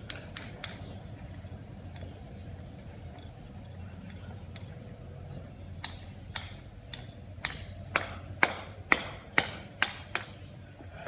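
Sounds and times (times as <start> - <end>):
sharp hard knocks: 5.8 - 10.4.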